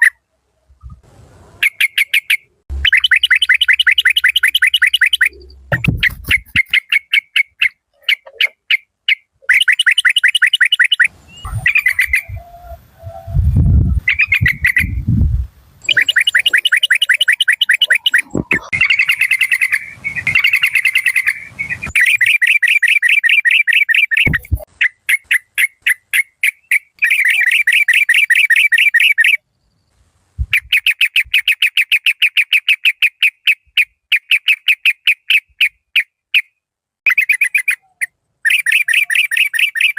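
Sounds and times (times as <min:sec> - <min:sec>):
bird chattering calls: 0:01.6 - 0:13.3, 0:14.0 - 0:15.0, 0:15.8 - 0:29.4
low thumps: 0:05.4 - 0:06.6, 0:24.3 - 0:24.7.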